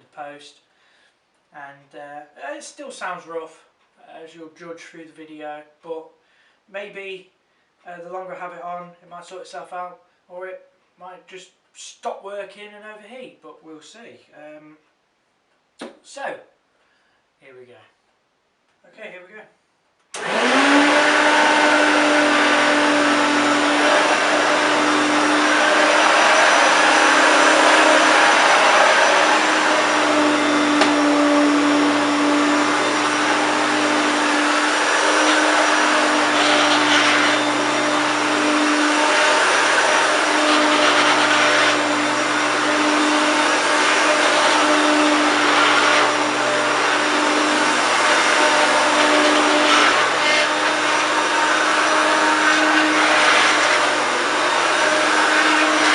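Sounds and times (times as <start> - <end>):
upright vacuum cleaner running: 20.2 - 55.9.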